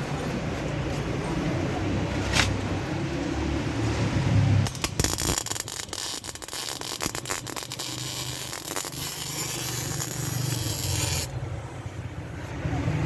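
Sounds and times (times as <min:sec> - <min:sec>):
welding arc crackling hiss: 0:04.7 - 0:11.3.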